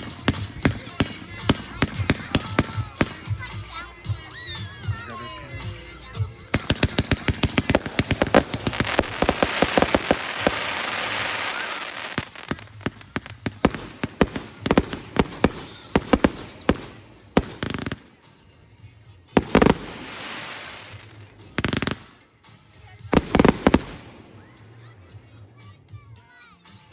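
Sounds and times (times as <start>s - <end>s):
firework bangs and crackling: 0.0s - 25.3s
fizzing hiss: 19.4s - 22.0s.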